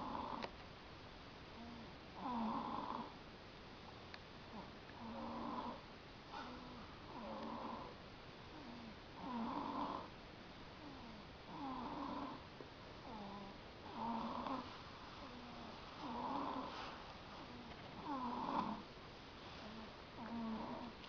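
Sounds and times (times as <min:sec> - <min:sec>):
person snoring: 0:01.6 - 0:03.1, 0:04.5 - 0:05.8, 0:06.4 - 0:07.9, 0:08.6 - 0:10.1, 0:13.0 - 0:16.8, 0:17.6 - 0:18.8, 0:19.6 - 0:20.9.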